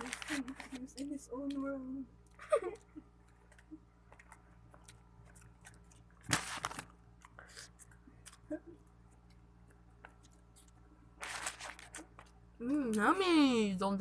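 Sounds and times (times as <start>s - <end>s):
person chewing fries: 2.8s - 10.8s.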